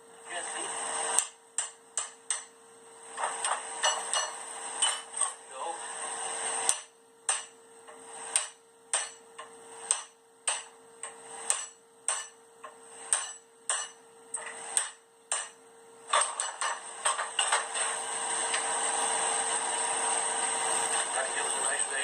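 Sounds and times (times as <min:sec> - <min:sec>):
hammer striking steel on anvil: 0:01.2 - 0:02.6, 0:03.2 - 0:05.4, 0:06.7 - 0:17.8.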